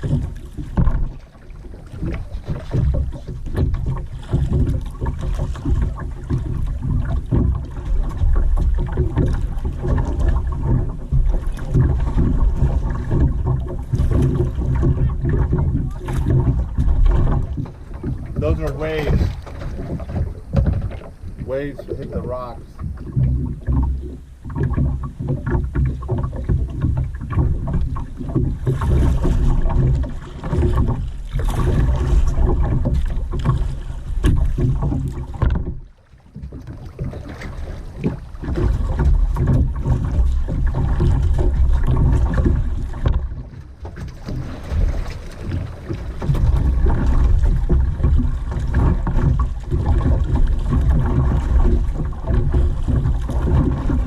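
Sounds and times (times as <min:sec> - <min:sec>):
waves washing against rocks: 0:00.0 - 0:24.1, 0:26.2 - 0:35.6
wind rumble on microphone: 0:00.0 - 0:54.0.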